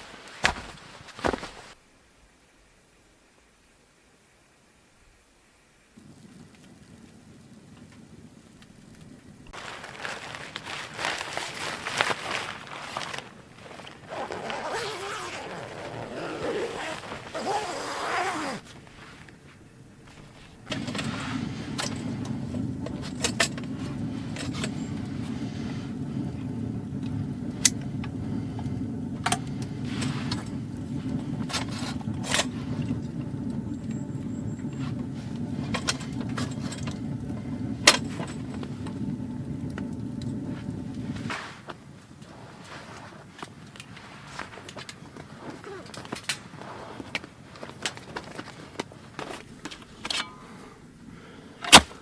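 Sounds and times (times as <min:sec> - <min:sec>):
rustling handling noise: 0:00.0 - 0:01.8, 0:08.6 - 0:50.3
wood stove fire crackling: 0:06.0 - 0:14.1, 0:18.6 - 0:42.4.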